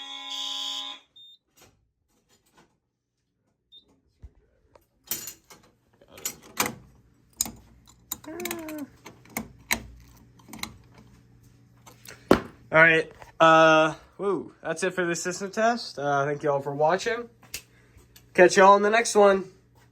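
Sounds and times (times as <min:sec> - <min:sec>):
fire alarm horns: 0:00.0 - 0:01.5.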